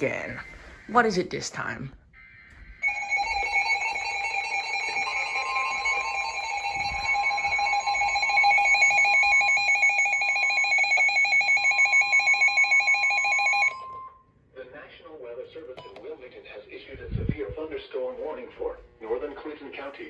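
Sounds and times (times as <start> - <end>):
rapidly pulsing alarm tone: 2.7 - 14.2
steady higher alert tone: 2.8 - 14.2.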